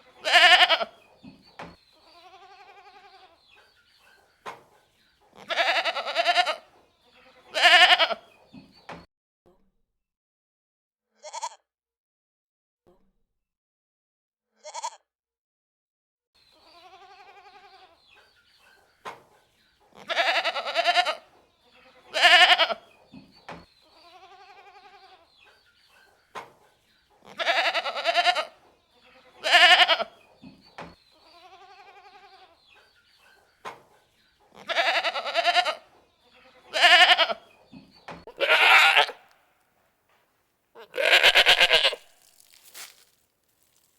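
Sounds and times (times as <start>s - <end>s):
goats bleating: 0.0s - 1.0s, 2.0s - 3.4s, 5.4s - 8.3s, 16.6s - 18.1s, 20.0s - 23.0s, 23.9s - 25.4s, 27.2s - 30.2s, 31.2s - 32.6s, 34.6s - 37.5s, 38.3s - 39.3s, 40.8s - 42.2s.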